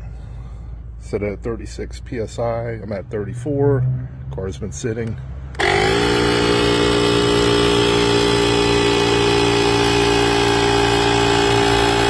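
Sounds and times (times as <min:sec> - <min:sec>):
air compressor running: 0:05.5 - 0:12.0.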